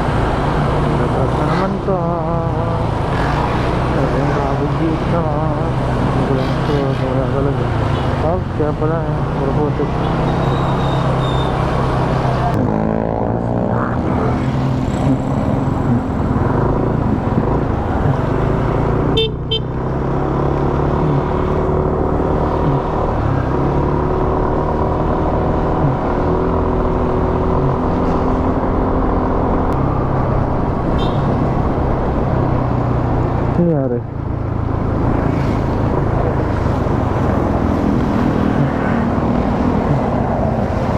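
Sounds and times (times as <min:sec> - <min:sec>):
road noise: 0:00.0 - 0:40.9
horn toot: 0:19.1 - 0:19.8, 0:30.9 - 0:31.4.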